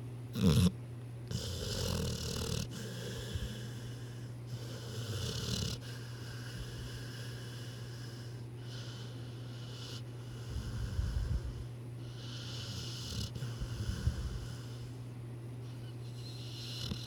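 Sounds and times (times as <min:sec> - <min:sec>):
steady low hum: 0:00.0 - 0:17.0
low rumbling snore: 0:01.3 - 0:15.0, 0:16.2 - 0:17.0
hissy breaths: 0:01.3 - 0:17.0.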